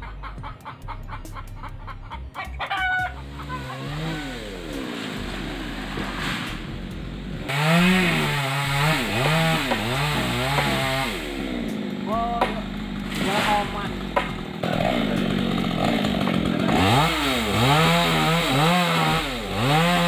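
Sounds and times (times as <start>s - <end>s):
chickens clucking: 0.0s - 6.7s
chainsaw revving: 3.0s - 20.0s.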